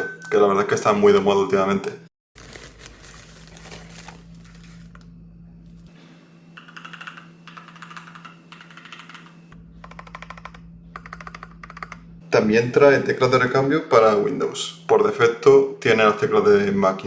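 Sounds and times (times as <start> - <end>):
mechanical keyboard typing: 6.6 - 12.0.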